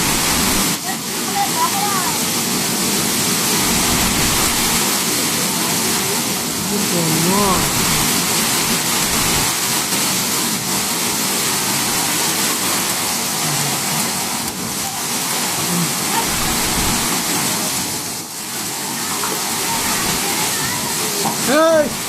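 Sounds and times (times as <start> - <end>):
rain: 0.0 - 22.0
strong wind: 2.6 - 6.7.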